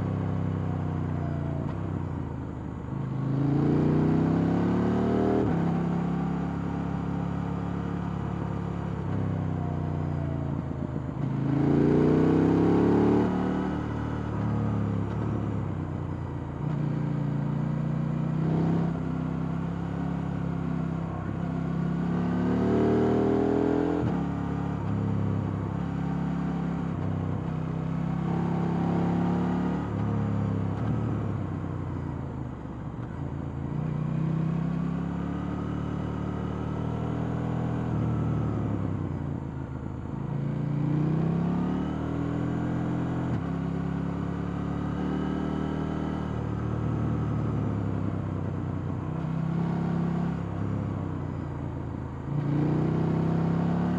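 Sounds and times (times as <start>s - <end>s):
motorcycle engine revving: 3.2s - 6.1s, 11.2s - 15.4s, 16.6s - 27.0s, 27.7s - 31.6s, 40.3s - 51.0s, 52.3s - 53.9s.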